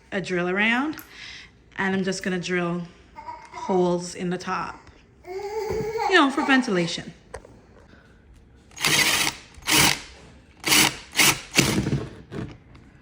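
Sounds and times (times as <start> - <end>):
power drill boring through plastic: 8.8 - 10.0, 10.6 - 12.1.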